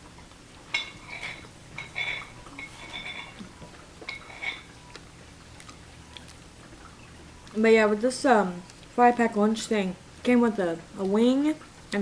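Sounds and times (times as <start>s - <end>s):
cutlery clinking against dish: 0.7s - 3.4s, 4.1s - 4.7s.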